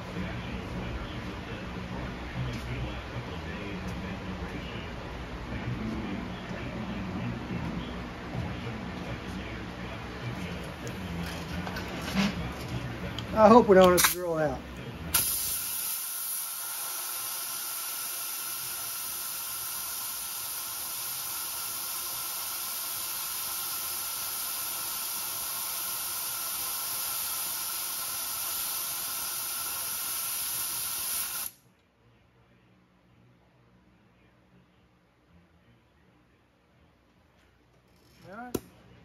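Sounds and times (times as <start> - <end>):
compressed air hissing: 15.1 - 31.6.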